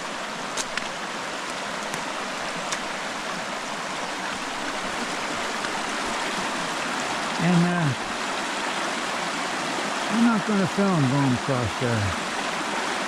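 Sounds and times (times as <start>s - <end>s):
creek water rushing: 0.0s - 13.0s.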